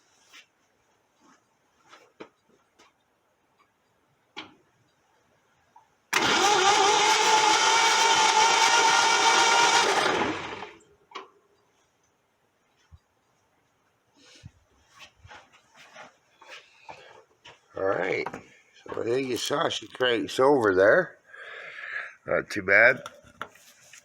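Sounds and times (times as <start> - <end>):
starter cranking engine: 6.1 - 10.8.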